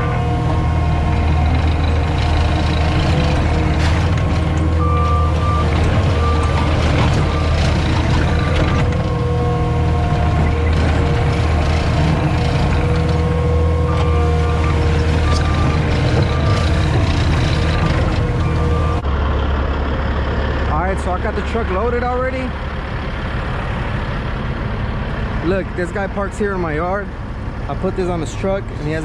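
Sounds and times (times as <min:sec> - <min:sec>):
diesel engine running hard: 0:00.0 - 0:29.0
backup alarm beeping: 0:04.8 - 0:07.6.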